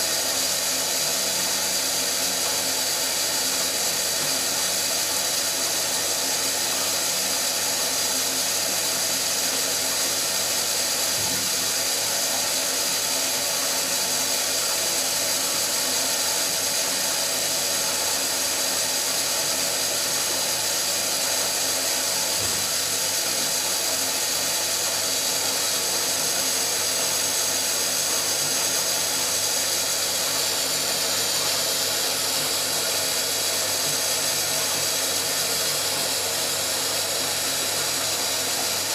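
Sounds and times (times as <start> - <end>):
washing machine motor whir: 0.0 - 38.9.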